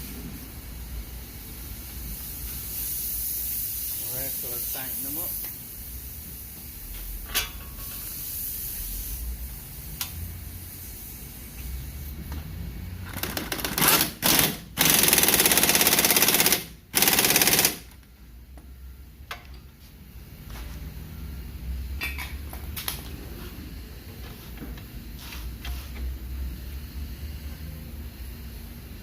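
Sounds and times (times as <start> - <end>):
impact wrench hammering: 13.2 - 18.0.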